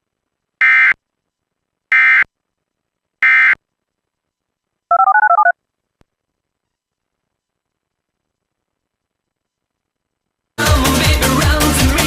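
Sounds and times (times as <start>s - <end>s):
rapidly changing beeps: 4.9s - 5.6s.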